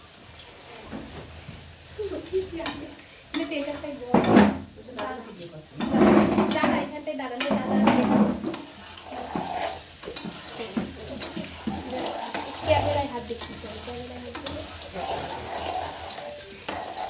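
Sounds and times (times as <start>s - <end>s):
potatoes frying in oil: 0.0s - 17.0s
spatula clicking against pan: 2.6s - 3.7s, 7.3s - 7.6s, 8.5s - 8.8s, 10.0s - 12.5s, 13.4s - 13.7s, 14.3s - 14.7s.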